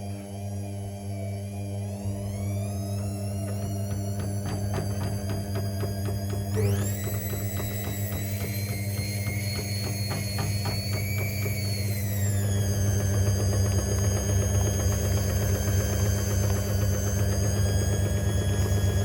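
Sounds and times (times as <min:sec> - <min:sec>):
washing machine motor whining: 0:00.0 - 0:19.0.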